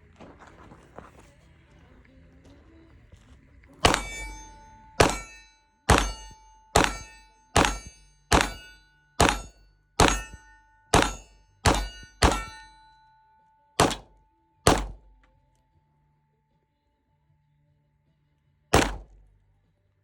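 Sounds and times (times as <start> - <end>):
gunshots: 3.8 - 12.9, 13.8 - 15.2, 18.7 - 19.2
metallic ringing tone: 3.8 - 16.8.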